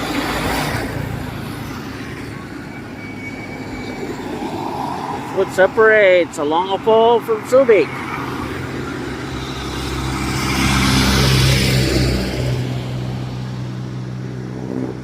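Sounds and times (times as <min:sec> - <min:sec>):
vehicle passing by: 0:07.8 - 0:15.0.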